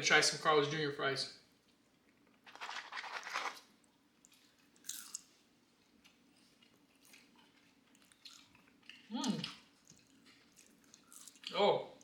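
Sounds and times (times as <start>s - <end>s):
person chewing crunchy fries: 2.6s - 12.0s.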